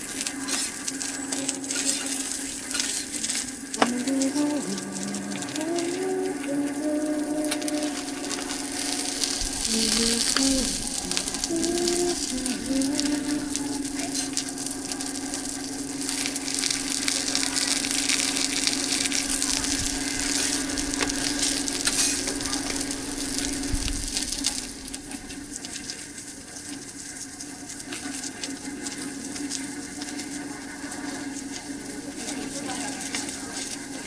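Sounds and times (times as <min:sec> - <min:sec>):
steady low hum: 0:00.0 - 0:25.9
cakes sizzling in a pan: 0:00.0 - 0:34.0.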